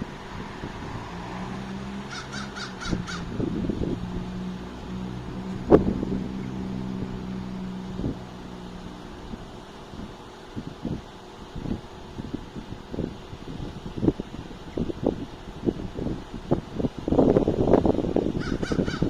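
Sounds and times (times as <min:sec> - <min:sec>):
low steady hum: 0:00.0 - 0:18.4
bird harsh caw-like calls: 0:02.0 - 0:03.4, 0:18.4 - 0:19.0.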